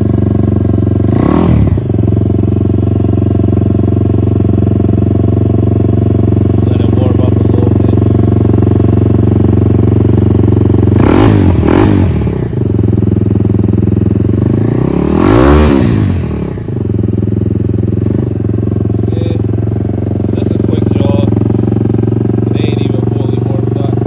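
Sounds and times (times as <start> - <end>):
motorcycle engine idling: 0.0 - 24.0
engine revving: 1.0 - 2.0, 6.6 - 8.5, 10.7 - 12.7, 14.3 - 16.8, 19.0 - 24.0.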